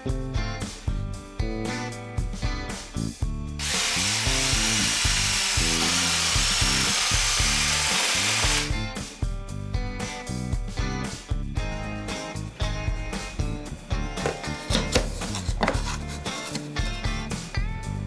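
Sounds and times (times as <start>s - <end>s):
guitar background music: 0.0s - 18.0s
electric jigsaw cutting wood: 3.6s - 8.7s.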